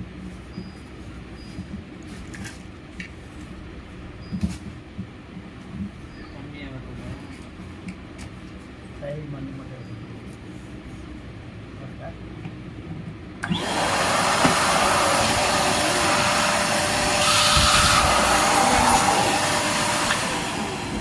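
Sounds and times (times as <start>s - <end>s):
vacuum cleaner motor running: 13.4s - 21.0s.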